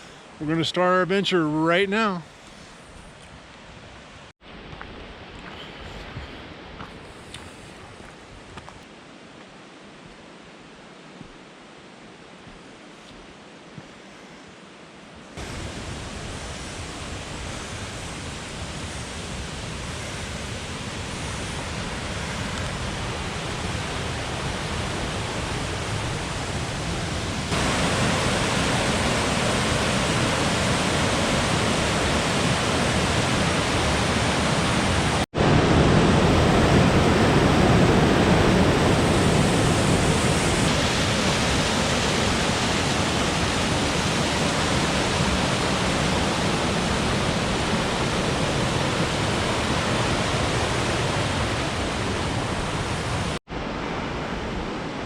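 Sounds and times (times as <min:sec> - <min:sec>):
waterfall rushing: 0:15.4 - 0:55.0.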